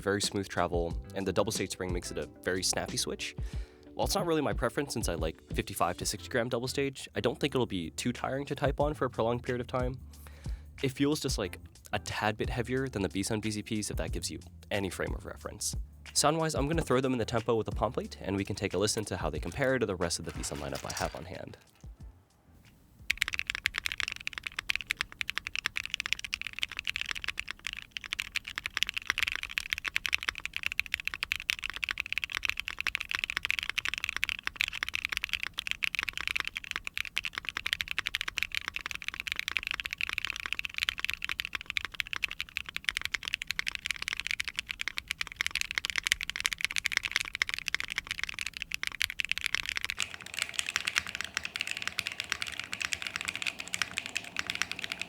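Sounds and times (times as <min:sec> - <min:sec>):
mechanical keyboard typing: 0:18.3 - 0:21.4, 0:23.0 - 0:55.0.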